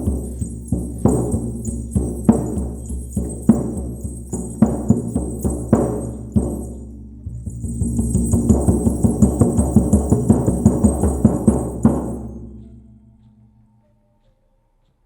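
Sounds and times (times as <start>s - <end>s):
frame drum booming: 0.0s - 13.5s.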